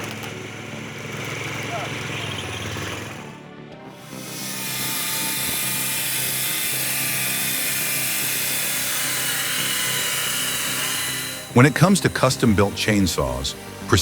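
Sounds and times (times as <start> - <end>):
machine running: 0.0 - 14.0.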